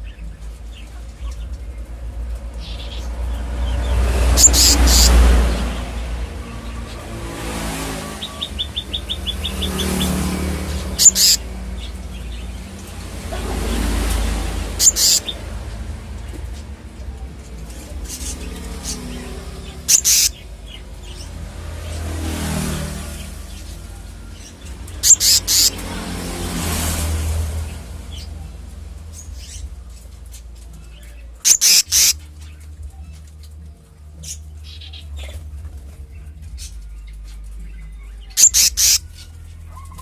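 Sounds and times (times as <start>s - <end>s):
vehicles passing: 0.0s - 40.0s
harsh bird calls: 2.6s - 15.8s, 17.6s - 26.2s, 27.1s - 33.2s, 36.5s - 40.0s
bird calling high notes: 4.3s - 5.4s, 8.2s - 11.5s, 14.8s - 15.4s, 19.7s - 20.5s, 25.0s - 25.8s, 31.4s - 32.2s, 38.3s - 39.4s.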